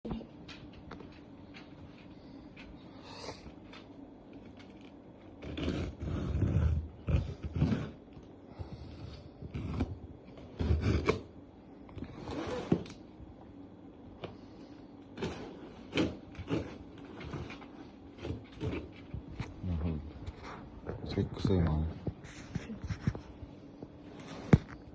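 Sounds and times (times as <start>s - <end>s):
packaging rustling and scraping: 15.0s - 24.9s.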